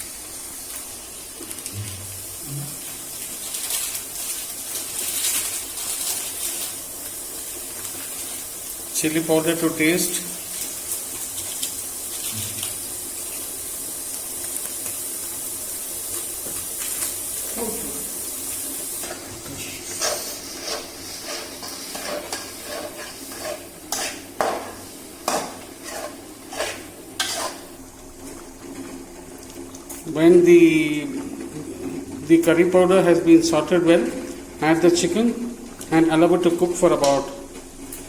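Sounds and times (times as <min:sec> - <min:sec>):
spices sizzling in a pan: 0:00.0 - 0:38.0
spoon scraping and clinking on pan: 0:19.9 - 0:27.6.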